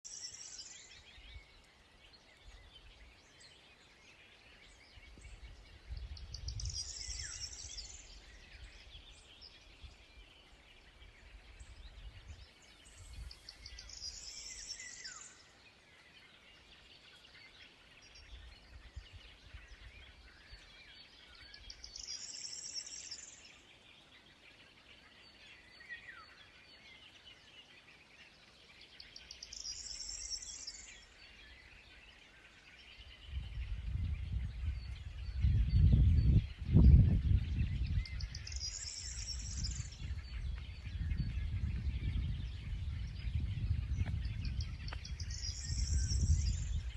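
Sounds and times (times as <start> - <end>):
low wind rumble: 4.4 - 14.5, 32.9 - 46.9.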